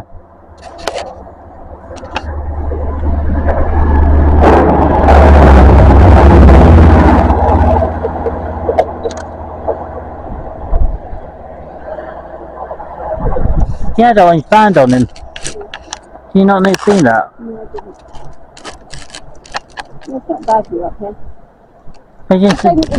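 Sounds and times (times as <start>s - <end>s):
train engine drone: 0.0s - 16.4s
rushing rail noise: 1.2s - 14.0s.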